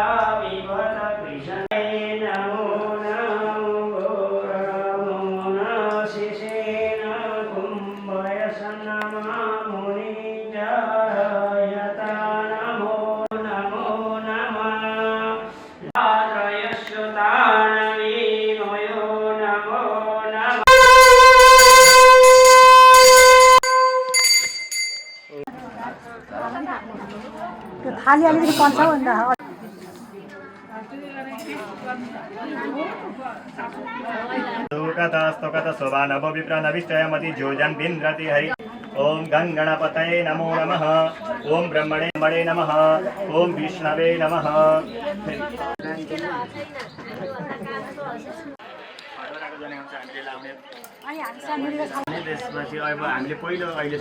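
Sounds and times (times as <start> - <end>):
conch shell blown: 20.7 - 24.4
bell ringing: 20.7 - 25.4.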